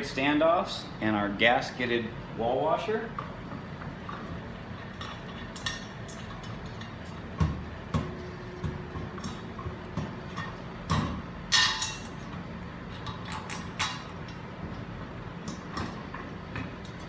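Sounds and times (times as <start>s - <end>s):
metal hardware clinking: 4.1s - 17.0s.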